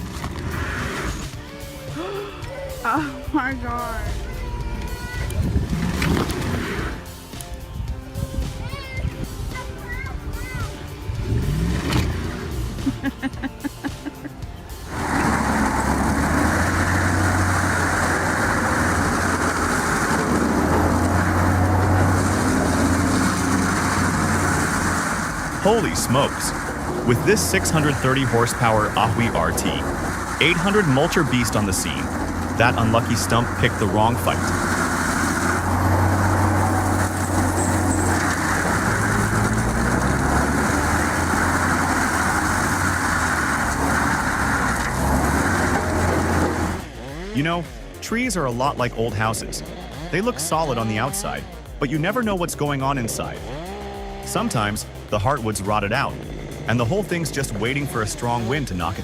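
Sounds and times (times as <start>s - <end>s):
mulching head grinding stump: 5.2s - 7.6s, 11.3s - 12.9s, 14.1s - 47.6s, 52.6s - 59.0s
diesel engine droning under load: 9.7s - 52.3s, 53.0s - 59.0s.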